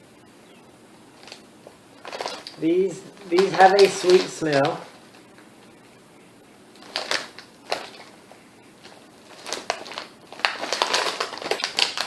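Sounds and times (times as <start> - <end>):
potato chips crunching: 2.0 - 5.0, 6.8 - 8.2, 8.8 - 12.0.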